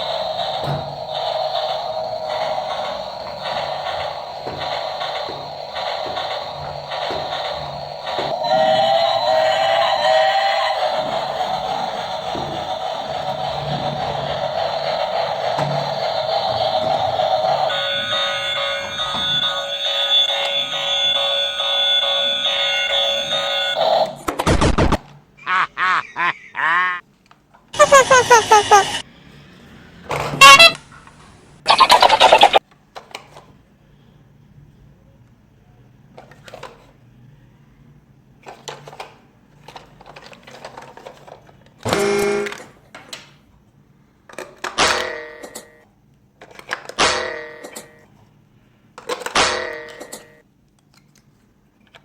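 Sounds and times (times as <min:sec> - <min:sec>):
plastic toys clicking and rattling: 0:10.4 - 0:19.2, 0:31.7 - 0:33.6, 0:36.2 - 0:36.9, 0:38.4 - 0:43.4, 0:44.2 - 0:45.7, 0:46.4 - 0:47.0, 0:49.0 - 0:52.0.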